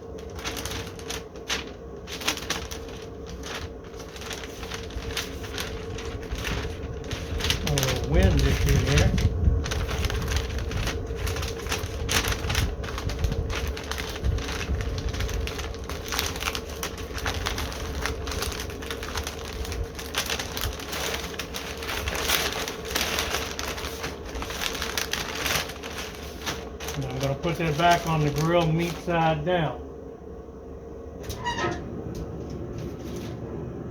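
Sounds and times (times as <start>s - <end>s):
paper crinkling and rustling: 0.0s - 29.7s, 32.5s - 33.4s
wind rumbling on microphone: 4.2s - 25.6s.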